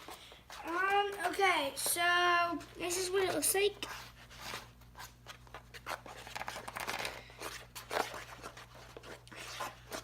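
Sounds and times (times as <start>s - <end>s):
slime being stirred: 3.2s - 10.0s.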